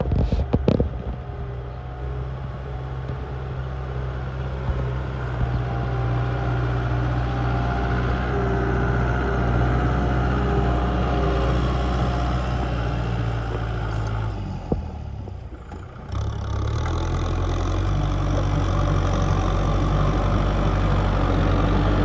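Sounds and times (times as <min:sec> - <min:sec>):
tractor diesel engine running: 0:00.0 - 0:22.0.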